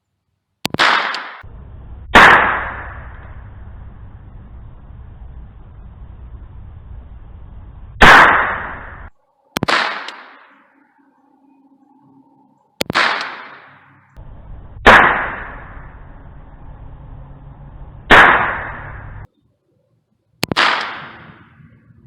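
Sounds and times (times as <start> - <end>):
gunshots with echo: 0.7 - 3.6, 8.0 - 10.6, 12.8 - 14.0, 14.8 - 19.3, 20.4 - 21.6.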